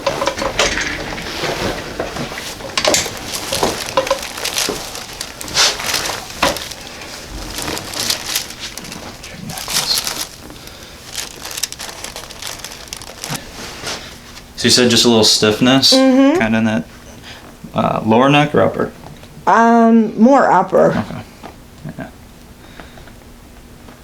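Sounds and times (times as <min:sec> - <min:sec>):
table creaking: 0:00.0 - 0:14.4
crinkling and rustling: 0:00.0 - 0:15.9.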